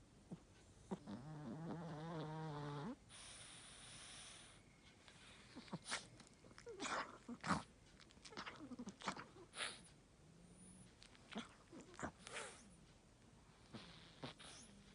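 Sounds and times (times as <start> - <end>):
dog snoring and wheezing: 0.3 - 4.6, 5.2 - 7.7, 8.3 - 12.8, 13.4 - 14.9.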